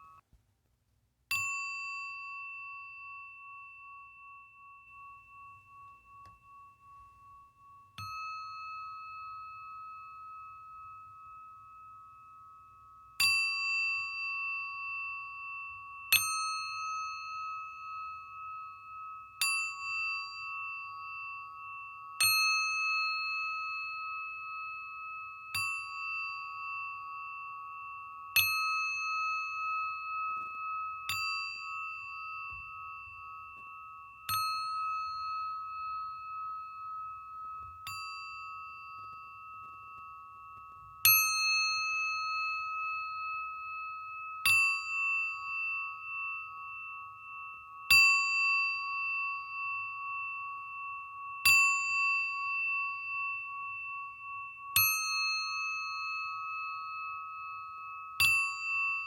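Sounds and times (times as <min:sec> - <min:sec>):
singing bowl struck with mallet: 0:13.2 - 0:47.0.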